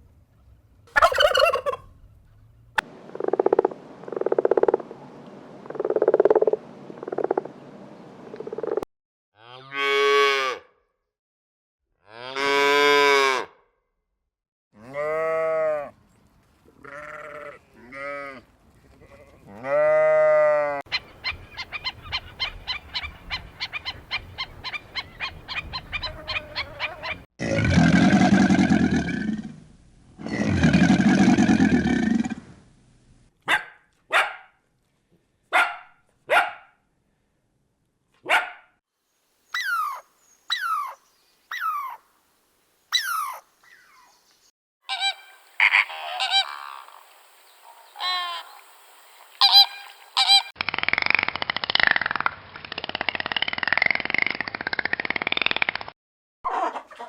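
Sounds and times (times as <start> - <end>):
farm animal calls: 1.0 - 1.8, 19.0 - 27.3, 44.9 - 48.6, 49.4 - 50.5
fowl honking: 1.0 - 1.8, 44.9 - 47.0, 47.6 - 48.6, 49.4 - 50.5.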